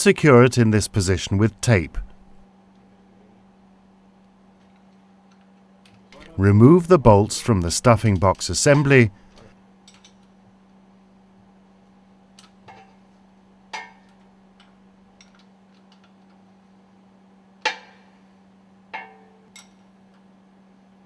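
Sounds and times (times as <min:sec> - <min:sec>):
steady low hum: 0:00.0 - 0:05.5, 0:06.2 - 0:09.7.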